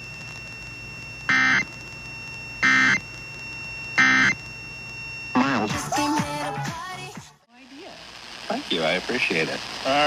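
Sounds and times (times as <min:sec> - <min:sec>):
buzzy digital tone bursts: 0:02.6 - 0:03.0, 0:04.0 - 0:04.4, 0:05.2 - 0:06.6.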